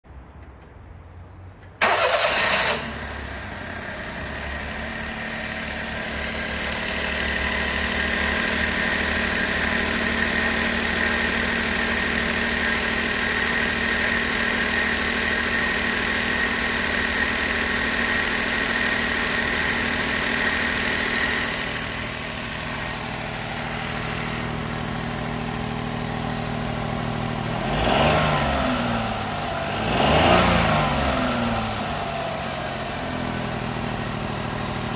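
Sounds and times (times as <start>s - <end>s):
car engine starting and idling: 1.8s - 34.9s
engine revving: 1.8s - 34.9s
high-pitched whine: 4.2s - 30.0s.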